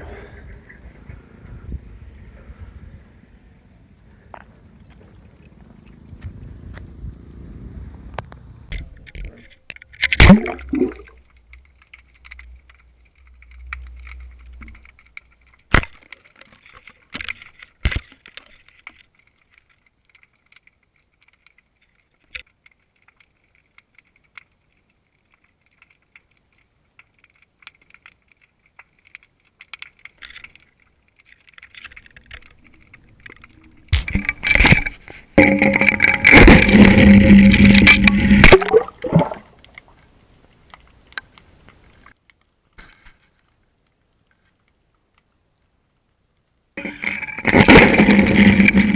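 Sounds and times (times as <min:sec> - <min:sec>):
faint crackling: 0:00.0 - 0:46.1
churning water rush: 0:32.2 - 0:39.7.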